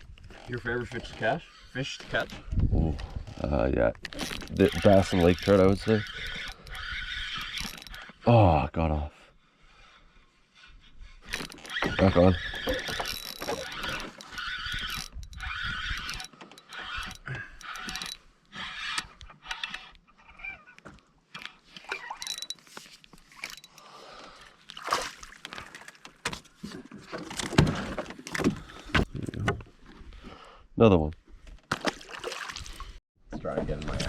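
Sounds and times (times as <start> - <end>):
fishing tackle knocking and rattling: 4.0 - 8.1, 11.3 - 18.2, 21.4 - 23.9.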